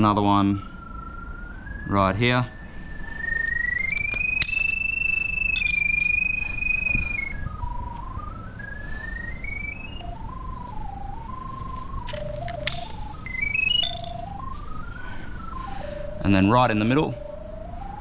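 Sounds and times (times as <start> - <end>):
sharp clicks: 12.1 - 13.0.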